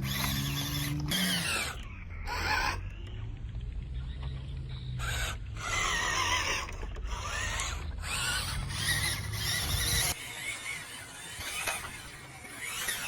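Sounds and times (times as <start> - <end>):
electric motor whining: 0.0 - 3.2, 3.9 - 13.0.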